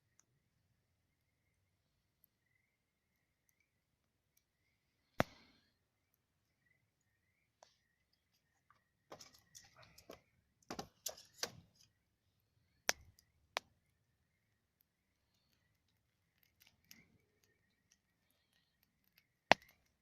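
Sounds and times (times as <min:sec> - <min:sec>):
wood fire crackling and popping: 0:12.8 - 0:13.7, 0:14.8 - 0:20.0.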